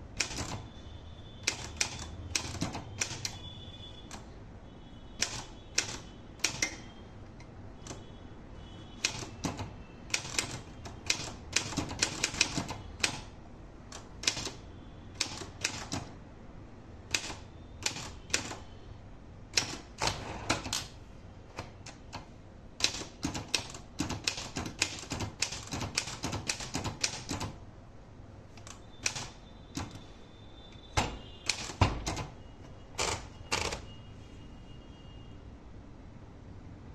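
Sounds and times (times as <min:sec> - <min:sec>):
typewriter keystroke clacks: 0:00.2 - 0:00.7, 0:01.4 - 0:03.4, 0:05.2 - 0:06.8, 0:09.0 - 0:13.3, 0:13.9 - 0:14.6, 0:15.2 - 0:16.2, 0:17.1 - 0:18.6, 0:19.5 - 0:20.9, 0:21.5 - 0:27.6, 0:28.6 - 0:30.0, 0:31.0 - 0:32.4, 0:33.0 - 0:33.8.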